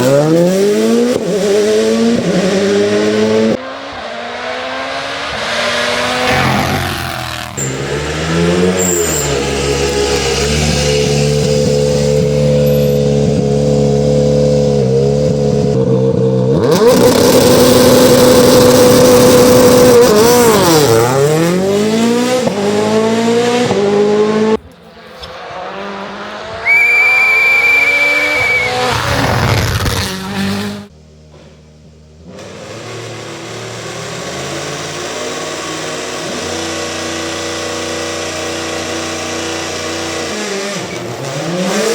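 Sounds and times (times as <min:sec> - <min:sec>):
car passing with gear changes: 0:00.0 - 0:31.5
rally car engines at high revs: 0:00.0 - 0:41.9.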